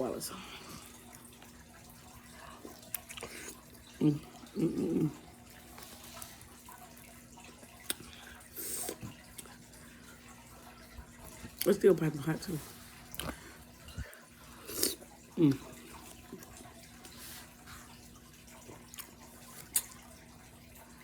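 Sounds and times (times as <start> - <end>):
wet slurping and mouth noises: 0.6 - 10.0, 10.6 - 20.2.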